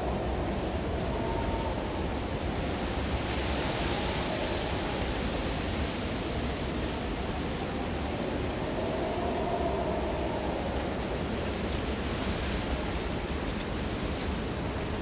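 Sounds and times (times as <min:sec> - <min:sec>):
faint howling whistle: 0:00.0 - 0:05.5, 0:07.5 - 0:11.5
blizzard wind rumbling: 0:00.0 - 0:15.0.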